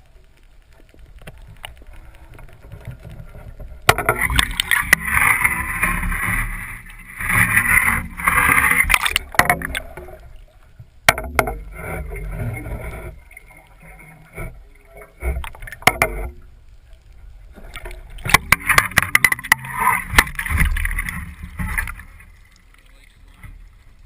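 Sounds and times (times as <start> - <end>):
sharp knocks and clatter: 2.7 - 5.4, 8.8 - 9.8, 11.1 - 12.1, 15.2 - 16.4, 18.2 - 22.0.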